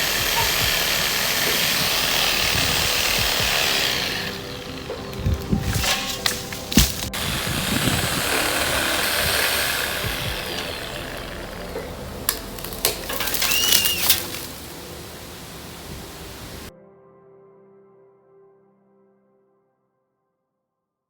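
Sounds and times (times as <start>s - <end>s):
sharp knocks: 0.0s - 14.6s
reciprocating saw cutting branch: 0.0s - 16.7s.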